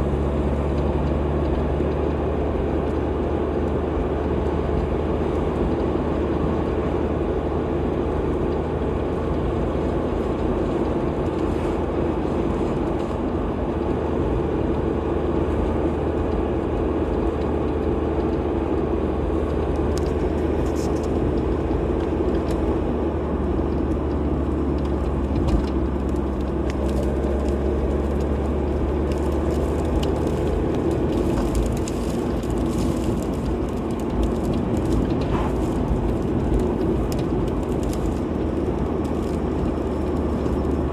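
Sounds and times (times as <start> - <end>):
car engine hum: 0.0 - 40.9
tyre noise on road: 0.0 - 40.9.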